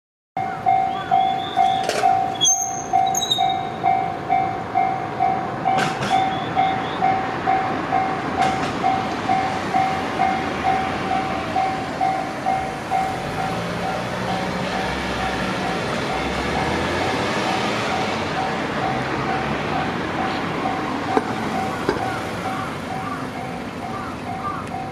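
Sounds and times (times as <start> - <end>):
level-crossing bell dinging: 0.4 - 24.9.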